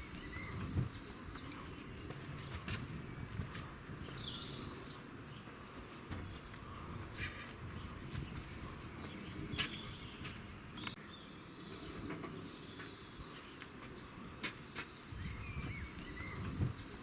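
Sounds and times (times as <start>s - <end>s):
faint bird chirps: 3.6s - 17.0s.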